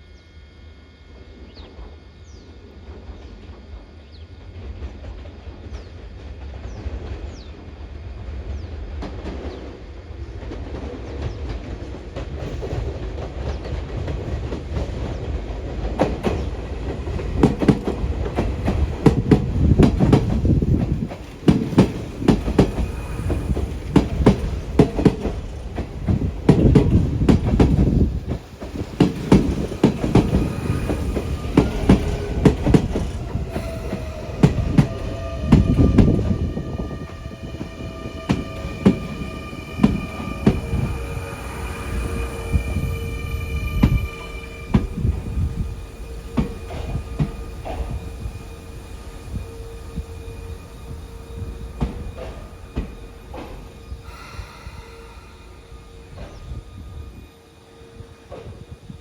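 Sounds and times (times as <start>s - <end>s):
train rumble: 0.0s - 59.0s
wheels clacking over rail joints: 12.2s - 41.0s.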